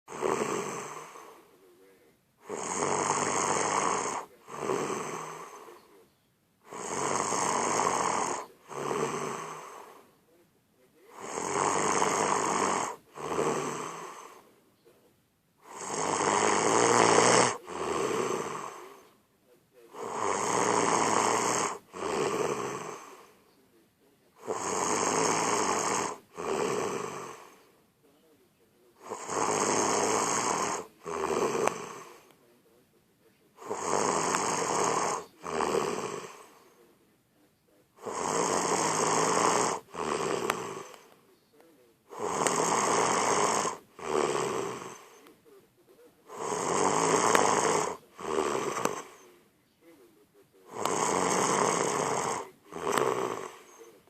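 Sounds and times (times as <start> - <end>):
loud snoring: 0.1 - 1.6, 2.4 - 6.0, 6.6 - 10.2, 11.1 - 14.6, 15.6 - 19.2, 19.9 - 23.4, 24.4 - 27.8, 29.0 - 32.4, 33.5 - 36.9, 37.9 - 41.2, 42.0 - 45.4, 46.2 - 49.4, 50.6 - 54.0.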